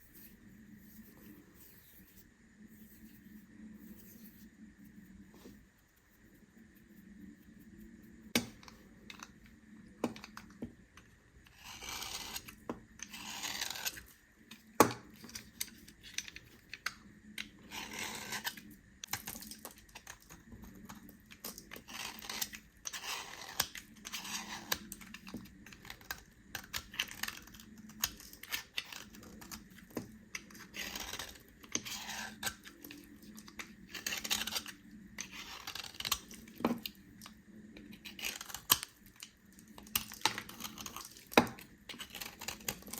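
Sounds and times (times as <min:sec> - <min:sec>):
knife cutting through soap: 0:11.5 - 0:16.8, 0:17.4 - 0:37.0, 0:37.8 - 0:38.9, 0:39.7 - 0:42.9.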